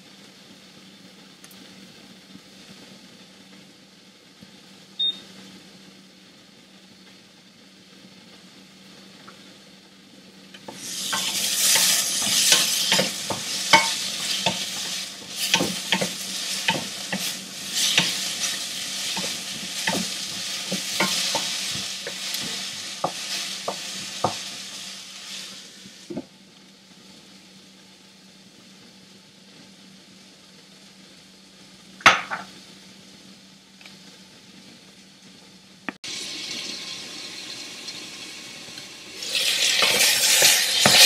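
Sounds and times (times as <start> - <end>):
vegetables sizzling in a pan: 0.0 - 41.0
spatula scraping a pan: 10.7 - 25.6, 39.3 - 41.0.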